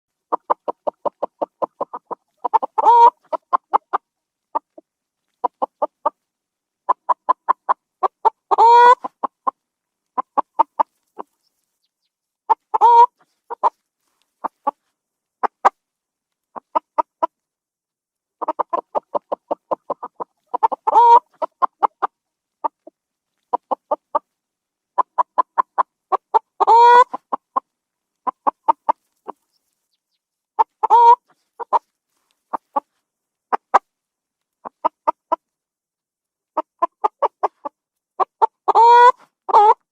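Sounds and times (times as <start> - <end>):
chicken cackling: 0.2 - 4.8, 5.4 - 6.2, 6.9 - 9.6, 10.2 - 13.8, 15.4 - 15.8, 16.5 - 17.3, 18.4 - 22.9, 23.5 - 24.2, 25.0 - 31.9, 34.6 - 35.4, 36.6 - 39.9.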